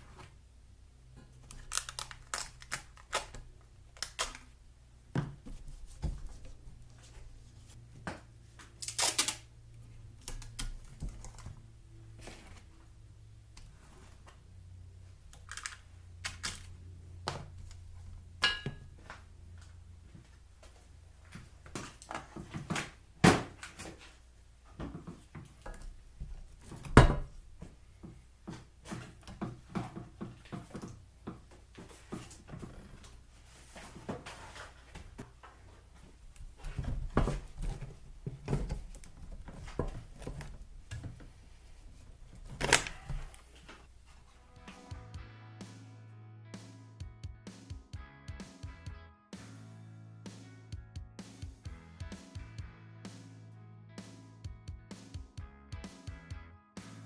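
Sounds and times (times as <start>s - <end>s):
foil tape crinkling: 1.4s - 4.6s, 8.7s - 9.5s, 15.3s - 16.8s.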